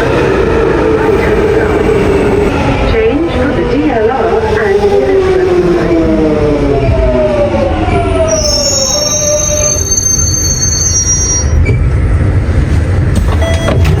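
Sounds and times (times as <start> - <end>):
low rumble of train running: 0.0 - 14.0
wheel and brake squeal: 8.3 - 11.9.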